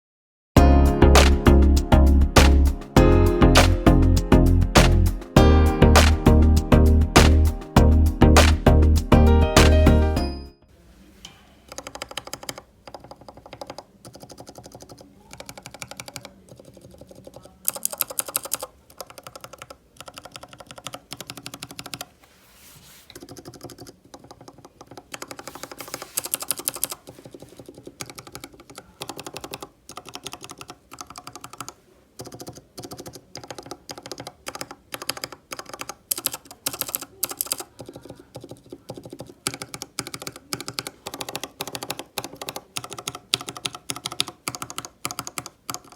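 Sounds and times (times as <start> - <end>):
mechanical keyboard typing: 11.7 - 22.1, 23.1 - 45.9.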